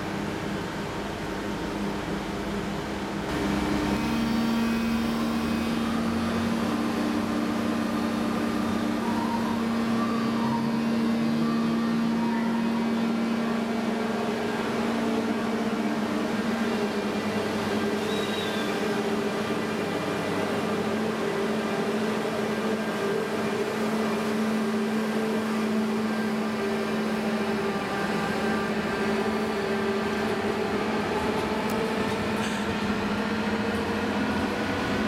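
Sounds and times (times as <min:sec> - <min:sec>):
electric train humming: 0:00.0 - 0:35.0.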